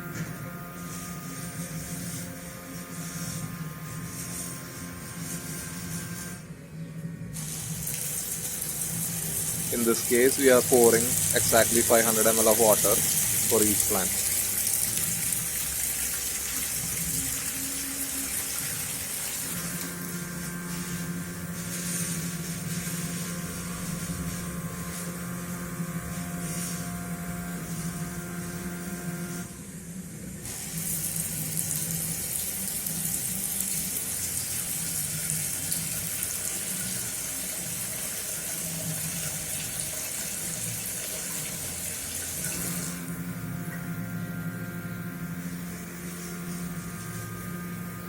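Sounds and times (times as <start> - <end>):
machine humming with held tones: 0.0 - 48.0
water pouring hiss: 7.4 - 20.1, 30.5 - 43.0.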